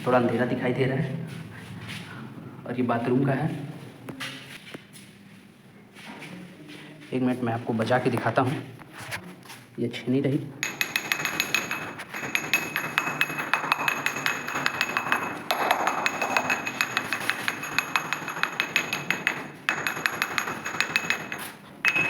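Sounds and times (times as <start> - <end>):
hard object tapping floor tiles: 10.6 - 22.0.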